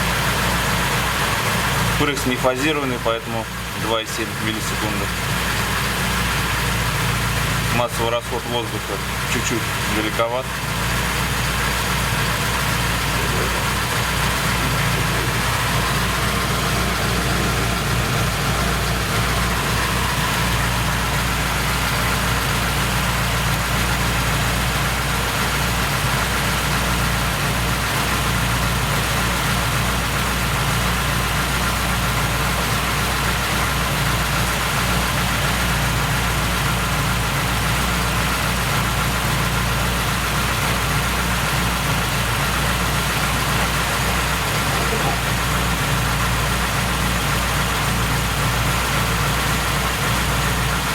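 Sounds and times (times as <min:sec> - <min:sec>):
car engine idling: 0:00.0 - 0:50.9.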